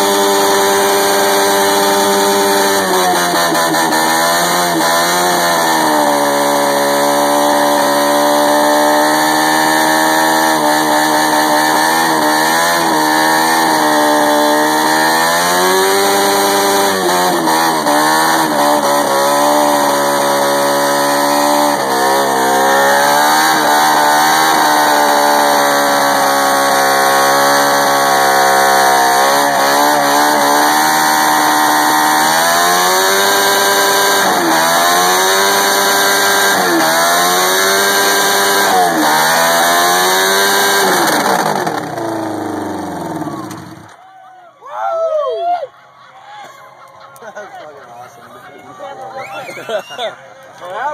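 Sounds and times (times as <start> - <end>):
motorcycle engine revving high: 0.0 - 43.9.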